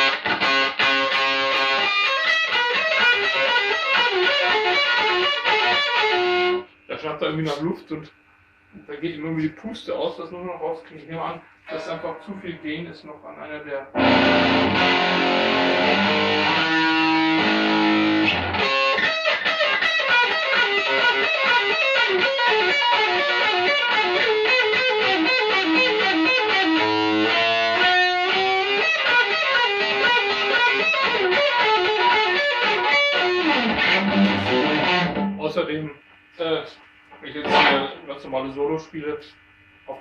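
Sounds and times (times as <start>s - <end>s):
distorted electric guitar: 0.0s - 7.7s, 13.9s - 35.8s, 36.5s - 38.2s.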